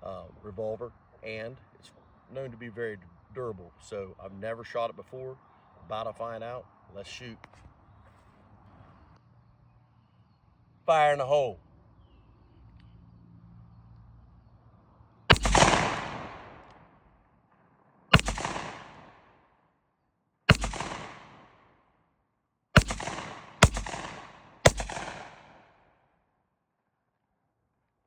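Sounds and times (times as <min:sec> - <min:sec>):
revolver shots echoing: 0:15.3 - 0:16.7, 0:18.1 - 0:19.2, 0:20.5 - 0:21.5, 0:22.8 - 0:25.6.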